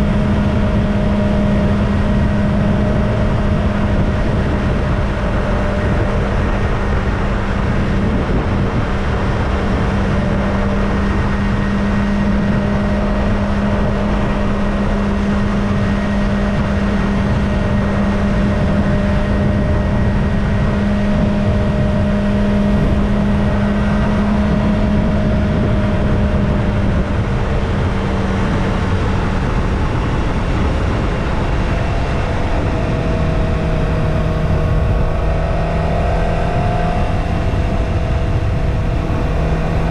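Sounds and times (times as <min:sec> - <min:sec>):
motorcycle engine cruising: 0:00.0 - 0:39.9
wind and road noise: 0:00.0 - 0:39.9.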